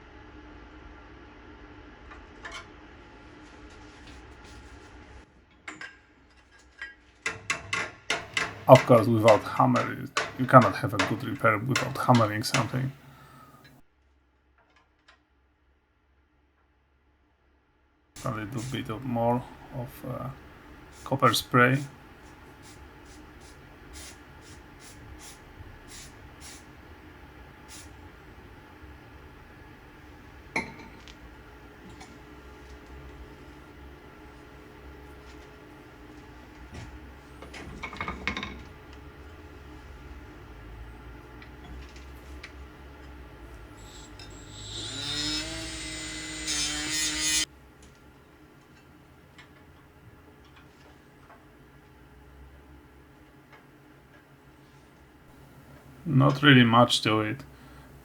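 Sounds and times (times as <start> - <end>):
hammer blows on sheet metal: 8.1 - 13.1
metallic clinks of sheet metal: 8.2 - 12.9
steady low hum: 8.2 - 13.8, 18.2 - 58.0
aerosol can spraying: 22.1 - 26.8, 27.6 - 28.0.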